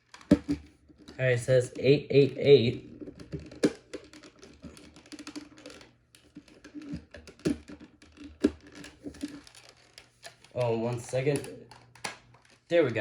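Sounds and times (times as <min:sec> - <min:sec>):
plastic housing clicks and taps: 0:03.2 - 0:12.6.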